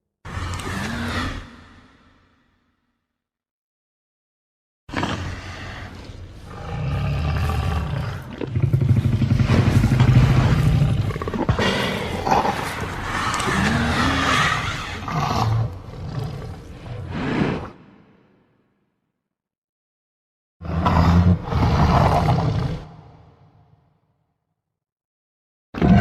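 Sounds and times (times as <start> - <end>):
dinosaur roar: 0.3 - 2.5, 4.9 - 18.2, 20.6 - 23.6, 25.8 - 26.0
rumbling growls: 0.3 - 2.5, 4.9 - 18.2, 25.8 - 26.0.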